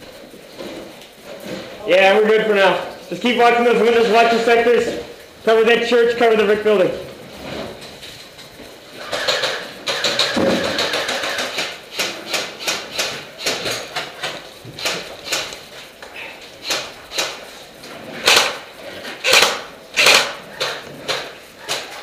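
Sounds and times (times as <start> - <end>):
sharp knocks and clicks: 8.4 - 15.7, 19.2 - 22.0.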